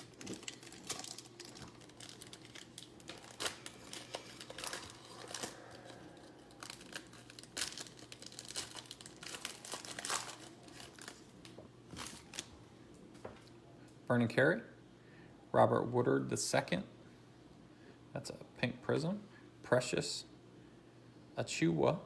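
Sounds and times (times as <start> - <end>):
cards crackling when handled: 0.0 - 12.5
plastic wrapper tearing and crinkling: 0.0 - 12.5.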